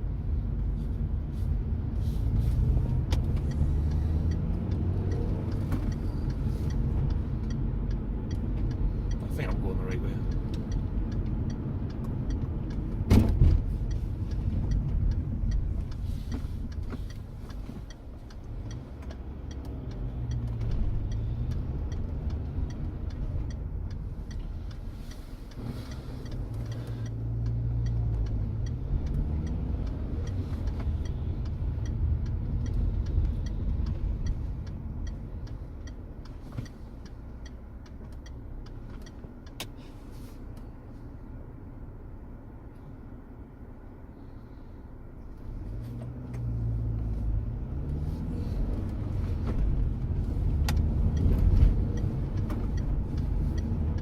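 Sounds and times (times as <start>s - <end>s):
car engine and road rumble: 0.0s - 54.0s
sharp thump: 13.1s - 13.7s.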